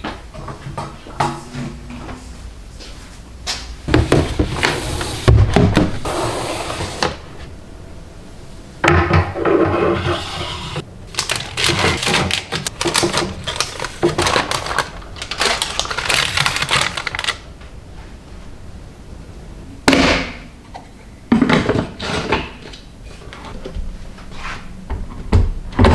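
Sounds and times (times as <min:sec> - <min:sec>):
rustling: 0:09.9 - 0:17.4
clicks and knocks of objects: 0:11.2 - 0:17.4.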